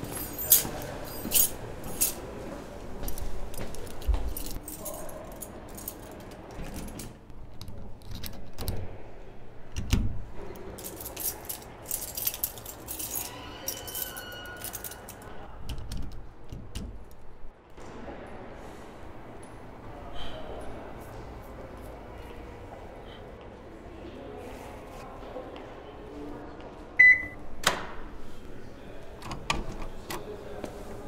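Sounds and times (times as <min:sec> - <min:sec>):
metal keys jangling: 0:00.0 - 0:02.2, 0:03.1 - 0:07.2, 0:10.8 - 0:15.4.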